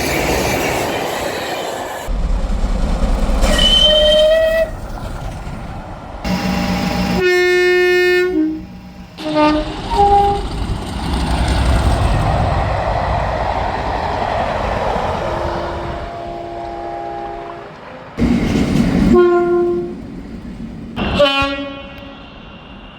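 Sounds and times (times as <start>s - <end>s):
passing train rumble: 0.0s - 22.9s
train horn blasts: 6.3s - 10.5s, 15.6s - 18.2s, 19.0s - 20.0s, 21.0s - 22.6s.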